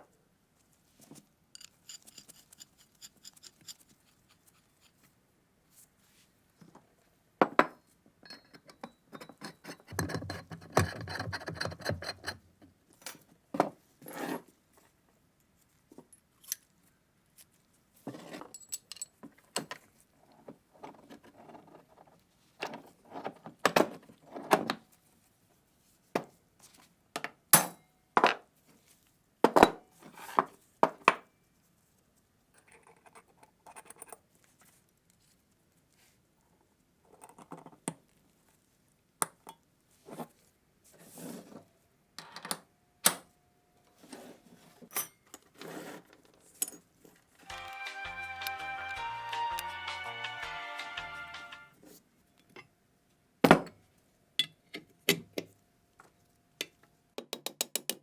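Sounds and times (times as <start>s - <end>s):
metal tools clinking: 1.6s - 3.9s, 18.4s - 19.2s.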